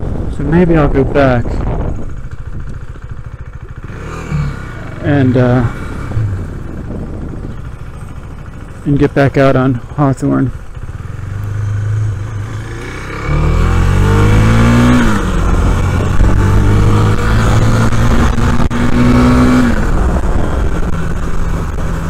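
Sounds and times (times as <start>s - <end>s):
motorcycle engine accelerating: 0.0s - 22.0s
wind rushing past helmet: 1.0s - 3.8s, 5.7s - 8.8s.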